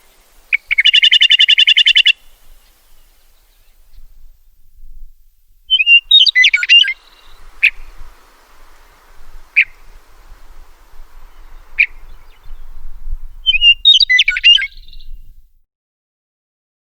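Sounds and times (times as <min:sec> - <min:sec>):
bird call notes: 0:00.0 - 0:04.0, 0:05.7 - 0:15.1
meadowlark song: 0:00.0 - 0:15.6.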